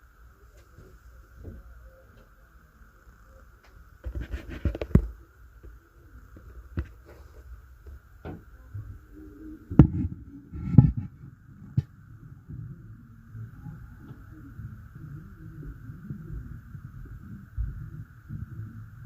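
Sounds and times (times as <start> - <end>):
thumps through the ceiling: 9.7 - 12.7.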